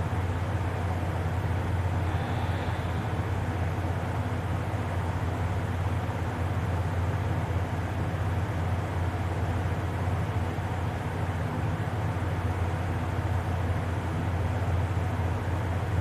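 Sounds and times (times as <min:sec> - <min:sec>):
steady low hum: 0:00.0 - 0:16.0
even hiss: 0:01.9 - 0:03.5.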